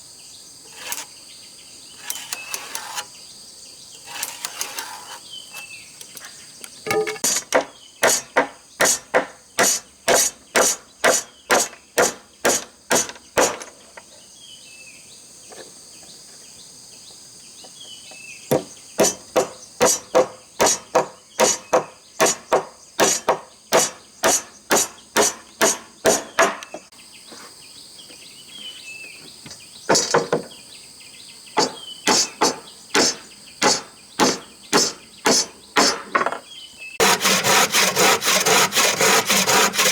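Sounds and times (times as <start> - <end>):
insects buzzing: 0.0 - 39.9
hammering: 37.0 - 39.9.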